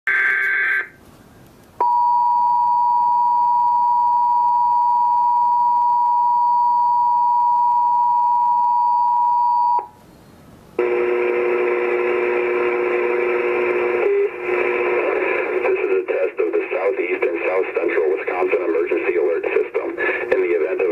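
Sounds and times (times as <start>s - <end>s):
loud steady alarm beep: 1.8s - 9.9s
low steady buzzing tone: 10.8s - 15.1s.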